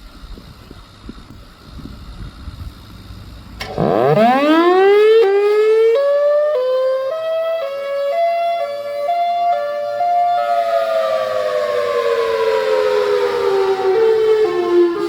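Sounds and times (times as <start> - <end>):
siren wail rising in pitch: 3.7 - 15.0.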